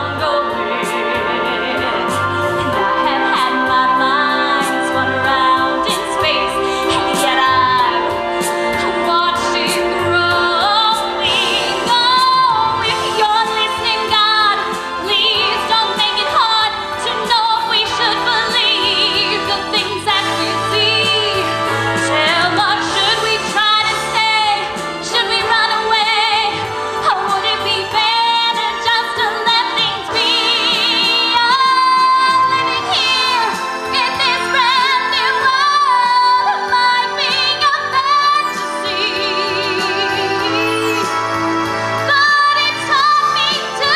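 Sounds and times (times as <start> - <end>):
instrumental accompaniment: 0.0 - 43.9
women singing with vibrato: 0.0 - 43.9.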